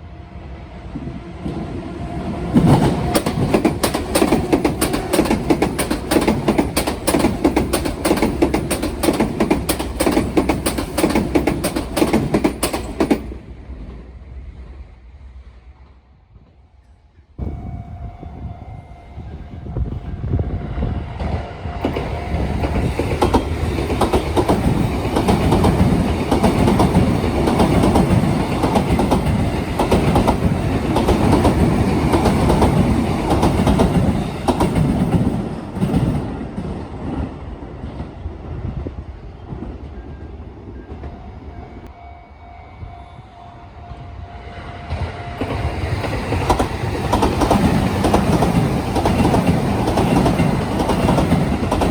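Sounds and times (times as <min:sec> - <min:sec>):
train wheels clattering over rails: 0:02.5 - 0:14.1, 0:21.2 - 0:38.1, 0:45.4 - 0:51.9
level-crossing warning bell: 0:17.4 - 0:28.8, 0:40.2 - 0:46.6.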